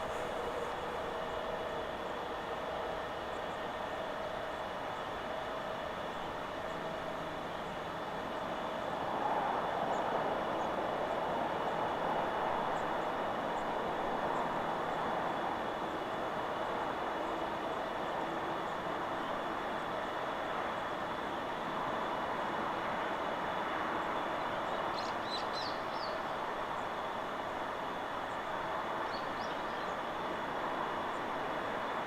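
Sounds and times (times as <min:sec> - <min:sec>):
wind blowing through trees: 0:00.0 - 0:32.0.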